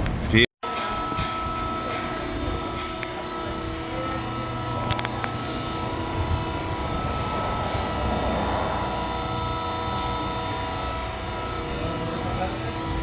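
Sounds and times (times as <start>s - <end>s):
machine drone with constant tones: 0.6s - 13.0s.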